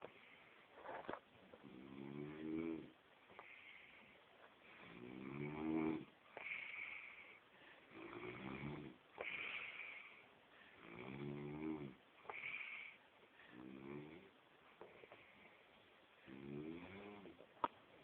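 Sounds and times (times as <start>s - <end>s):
man snoring: 4.8s - 6.1s, 7.9s - 9.8s, 10.8s - 12.6s, 13.5s - 14.3s, 16.3s - 17.3s.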